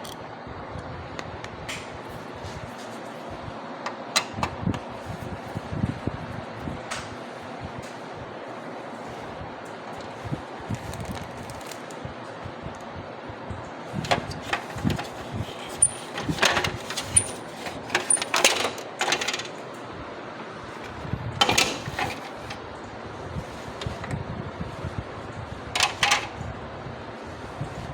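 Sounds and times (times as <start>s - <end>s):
printer clicking and rattling: 14.0s - 19.8s, 20.8s - 22.6s, 25.8s - 26.4s.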